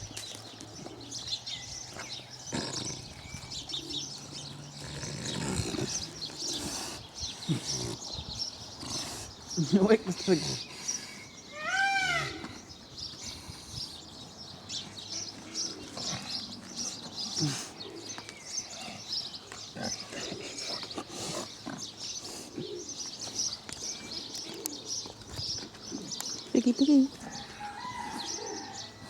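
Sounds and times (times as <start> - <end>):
small birds chirping: 0.0 - 29.0
pig grunting: 2.0 - 11.0, 15.1 - 23.0.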